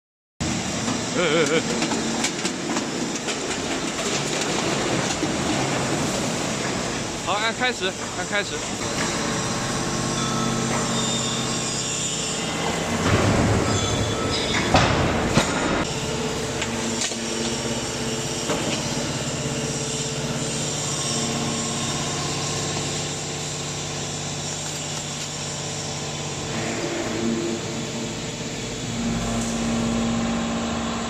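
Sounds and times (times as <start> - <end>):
hydraulic baler humming: 0.4 - 31.0
scrap metal crushing and clanking: 1.7 - 6.9.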